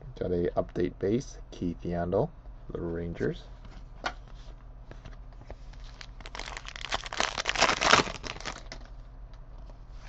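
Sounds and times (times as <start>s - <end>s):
foil wrapper crinkling: 5.7s - 8.9s.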